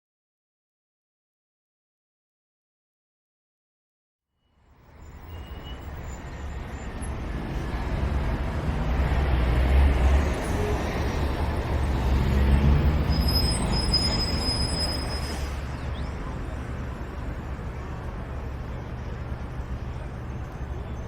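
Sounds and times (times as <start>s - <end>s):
faint high squeal: 4.4s - 6.9s, 12.9s - 16.2s
large vehicle rumbling: 4.8s - 21.0s.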